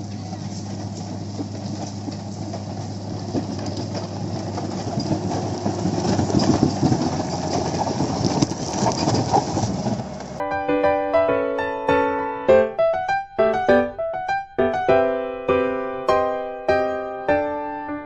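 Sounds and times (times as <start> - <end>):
heavy machinery droning: 0.0 - 10.4
rattling clatter: 0.0 - 10.4.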